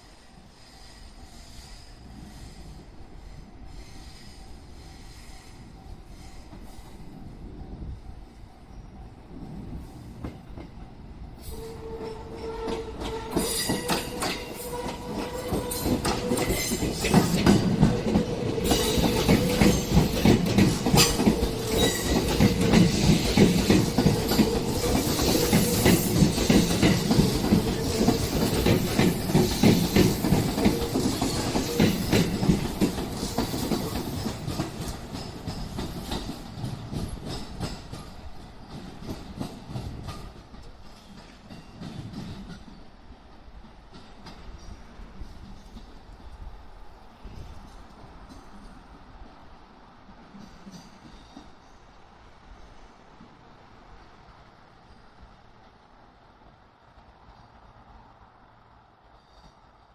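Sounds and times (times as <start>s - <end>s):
electric train passing: 0.0s - 59.9s
wheels clattering over rail joints: 12.5s - 42.8s.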